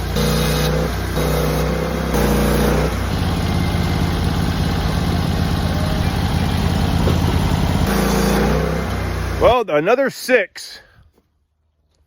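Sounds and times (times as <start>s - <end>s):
sawmill engine running: 0.0s - 9.9s.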